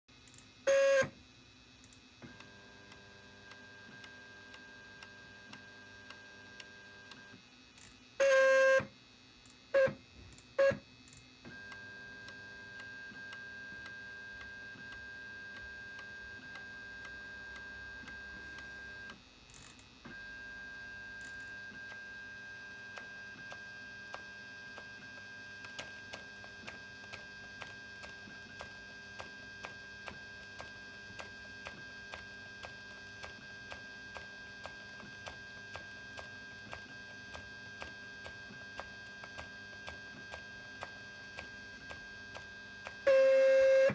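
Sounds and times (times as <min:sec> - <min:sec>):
printer beeper: 0:00.7 - 0:01.2, 0:08.2 - 0:09.0, 0:09.7 - 0:10.9, 0:11.5 - 0:19.2, 0:20.1 - 0:43.9.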